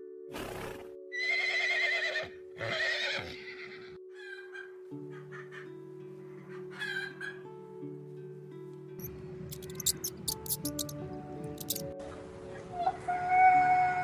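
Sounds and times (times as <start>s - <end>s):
background music: 0.0s - 14.0s
horse whinnying: 0.3s - 4.0s.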